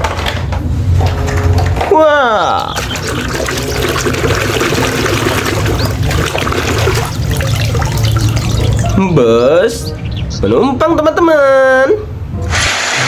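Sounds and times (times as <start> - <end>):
water running and trickling: 2.5 - 10.4.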